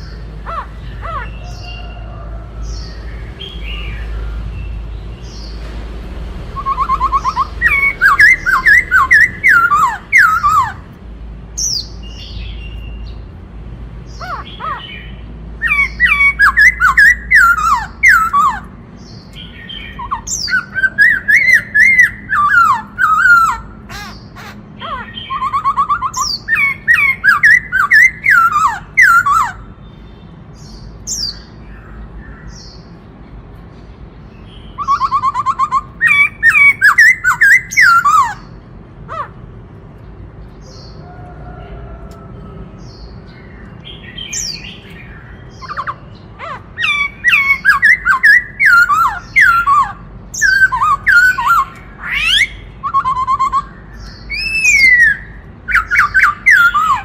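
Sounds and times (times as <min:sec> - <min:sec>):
bird singing whistled phrases: 0:06.5 - 0:10.8, 0:14.2 - 0:18.7, 0:19.4 - 0:23.7, 0:25.0 - 0:29.6, 0:34.6 - 0:38.4, 0:46.8 - 0:57.0.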